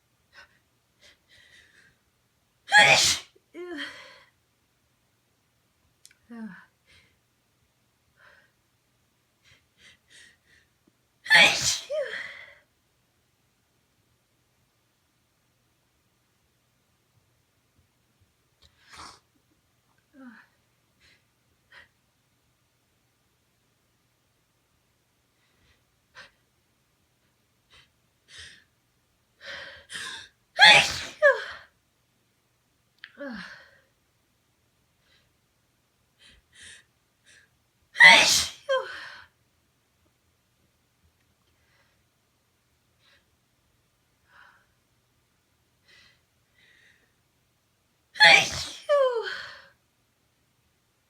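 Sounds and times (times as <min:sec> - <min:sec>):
person sneezing loudly: 0:02.7 - 0:03.4, 0:11.3 - 0:12.3, 0:30.6 - 0:31.5, 0:38.0 - 0:38.9, 0:48.2 - 0:49.3
faint quick breaths: 0:45.8 - 0:47.2.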